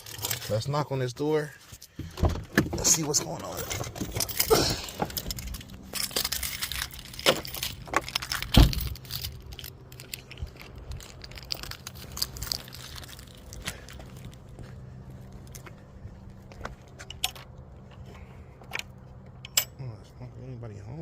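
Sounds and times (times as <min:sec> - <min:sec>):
jingling and rustling handling noise: 0:00.0 - 0:02.0, 0:02.7 - 0:18.4.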